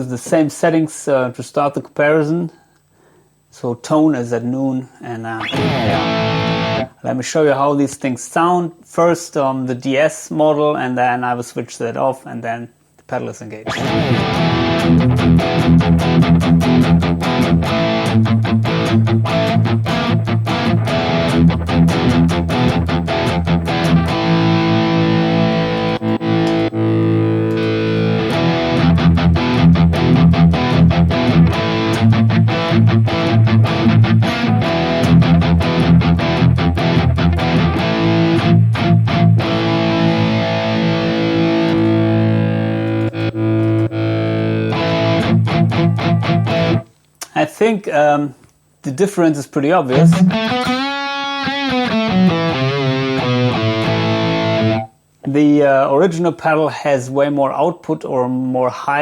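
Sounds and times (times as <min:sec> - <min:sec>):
distorted electric guitar riffing: 0:05.4 - 0:07.0, 0:13.6 - 0:46.9, 0:49.8 - 0:55.0.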